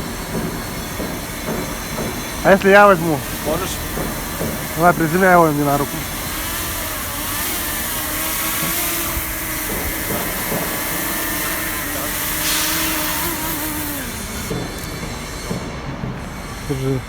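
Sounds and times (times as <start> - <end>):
quadcopter drone hovering: 0.0 - 17.0.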